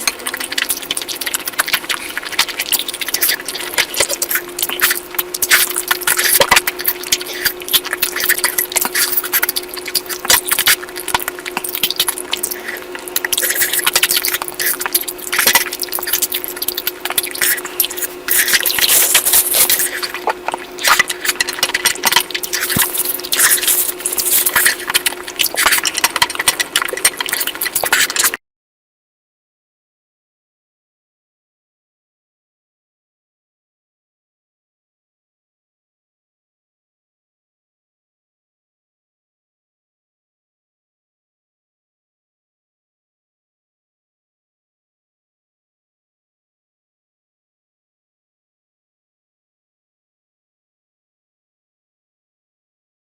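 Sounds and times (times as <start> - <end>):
faint steady hum: 0.0 - 28.4
wet chewing and smacking: 0.0 - 28.4.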